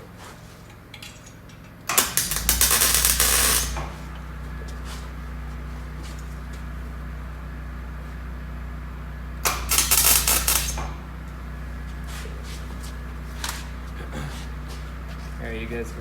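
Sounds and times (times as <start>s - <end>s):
steady low hum: 0.0s - 16.0s
welding crackling hiss: 1.9s - 3.9s, 9.5s - 10.9s.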